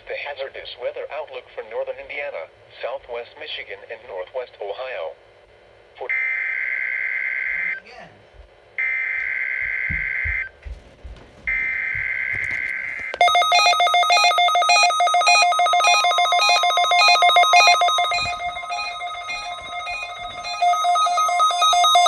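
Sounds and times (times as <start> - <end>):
buzzing data bursts: 13.2 - 22.0
trilling electronic alert tone: 13.2 - 22.0.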